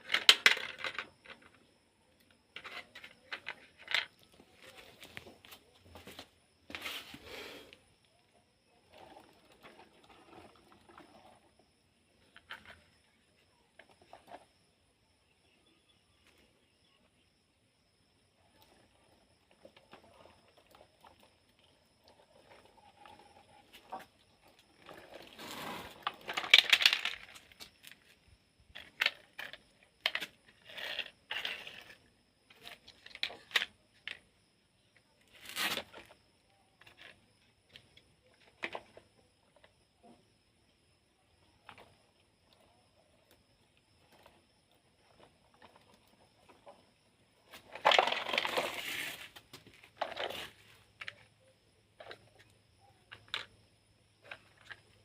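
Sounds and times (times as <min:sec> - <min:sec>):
toys clicking and knocking: 0:00.0 - 0:05.7, 0:26.0 - 0:34.3, 0:44.0 - 0:55.0.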